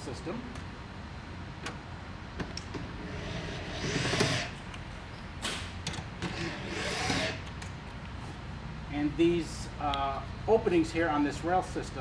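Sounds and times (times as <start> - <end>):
power drill driving a bolt: 3.1 - 4.6, 6.2 - 7.5.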